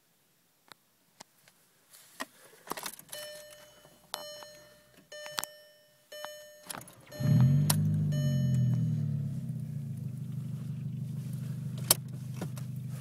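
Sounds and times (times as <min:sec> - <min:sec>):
electronic chime: 0:03.2 - 0:09.2.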